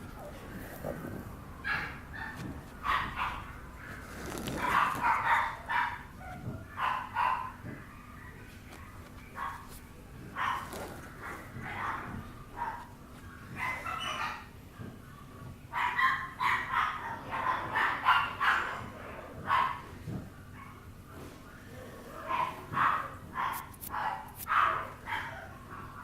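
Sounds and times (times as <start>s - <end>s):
puppy yapping: 1.6s - 9.7s, 10.3s - 14.9s, 22.3s - 26.0s.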